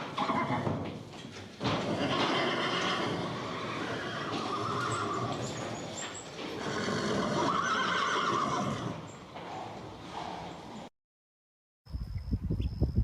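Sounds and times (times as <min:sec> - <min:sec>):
horse neighing: 0:00.2 - 0:00.8, 0:01.8 - 0:10.9.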